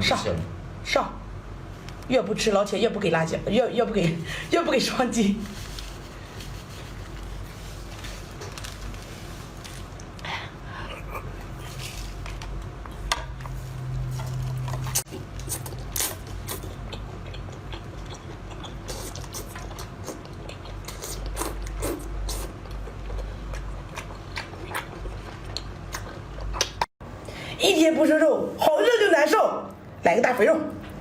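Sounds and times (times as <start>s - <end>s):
steady low hum: 0.0s - 28.6s
person chewing and biting: 14.2s - 26.9s.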